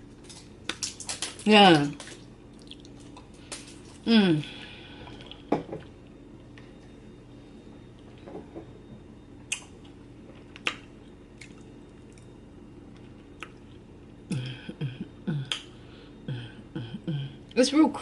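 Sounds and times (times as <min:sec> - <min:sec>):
low steady hum: 0:00.0 - 0:18.0
person murmuring: 0:04.1 - 0:04.5, 0:14.3 - 0:15.6, 0:16.3 - 0:17.5
mouth clicks and smacks: 0:09.5 - 0:09.7, 0:10.6 - 0:11.6, 0:15.4 - 0:15.7.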